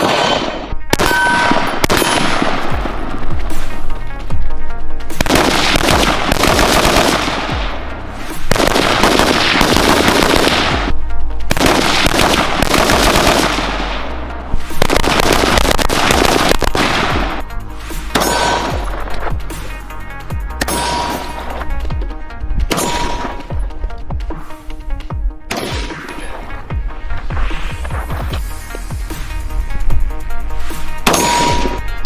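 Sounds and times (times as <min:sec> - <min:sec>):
rapid gunfire: 0:00.0 - 0:04.0, 0:05.0 - 0:14.1, 0:14.7 - 0:17.5, 0:18.1 - 0:19.9, 0:22.7 - 0:23.6, 0:25.5 - 0:26.4, 0:30.7 - 0:32.0
background music: 0:00.0 - 0:32.0.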